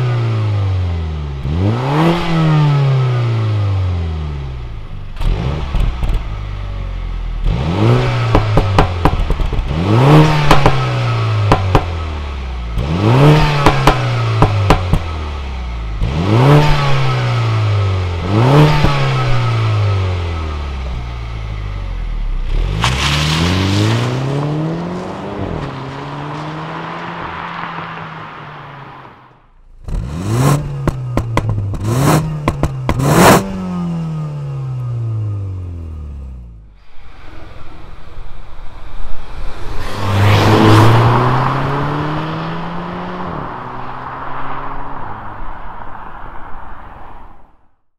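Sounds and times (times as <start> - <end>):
car engine revving: 0.0 - 46.6
exhaust pops and crackles: 5.2 - 6.4, 8.2 - 12.0, 13.6 - 15.2, 29.8 - 33.6.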